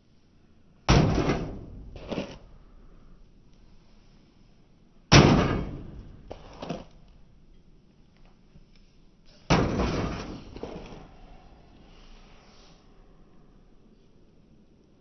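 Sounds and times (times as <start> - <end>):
loud bangs with rattling: 0.9 - 1.9, 5.1 - 6.3, 9.5 - 10.6.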